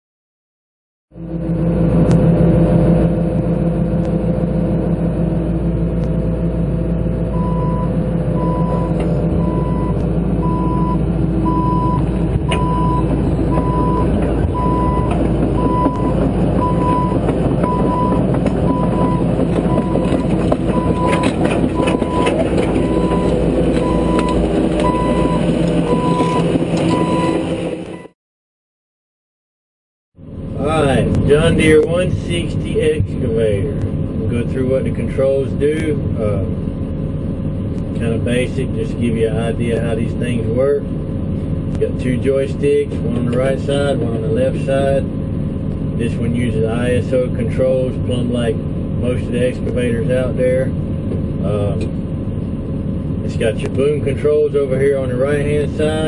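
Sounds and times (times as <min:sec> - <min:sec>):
excavator diesel engine running: 0:01.1 - 0:28.1, 0:30.2 - 0:56.0
warning alarm beeping: 0:07.3 - 0:28.1.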